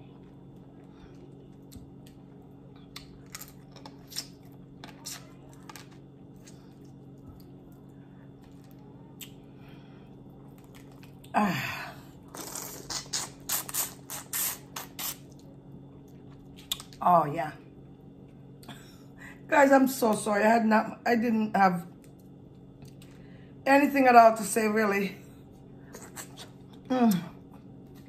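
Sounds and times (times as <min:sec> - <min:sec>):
crackling and smacking while eating: 0:00.0 - 0:11.4, 0:12.0 - 0:17.0, 0:17.6 - 0:19.1, 0:21.8 - 0:23.5, 0:25.2 - 0:28.0
steady low hum: 0:00.0 - 0:28.0
loud slurp: 0:12.3 - 0:15.2.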